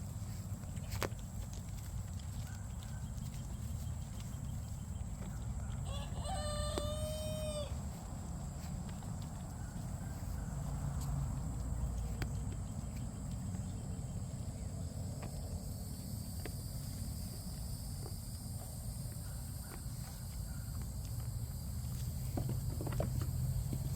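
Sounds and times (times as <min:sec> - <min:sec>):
goats pulling and chewing leaves: 0:00.0 - 0:23.9
high insect chorus: 0:00.0 - 0:23.9.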